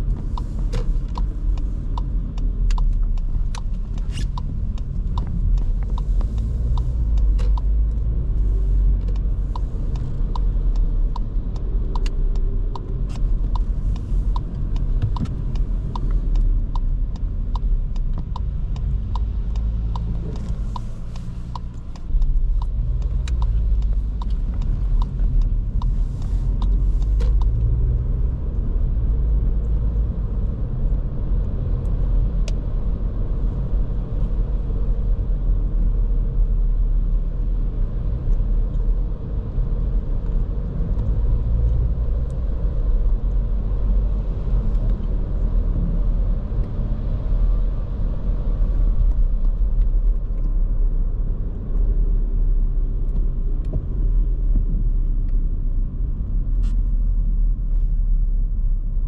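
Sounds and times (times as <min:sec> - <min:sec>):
car engine rumbling: 0:00.0 - 0:59.0
tyres on road: 0:00.0 - 0:59.0
light ticking: 0:00.1 - 0:30.6.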